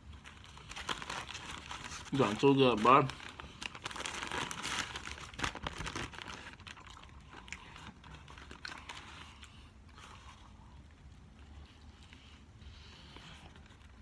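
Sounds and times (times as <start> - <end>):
wrapper paper crinkling: 0.2 - 9.2.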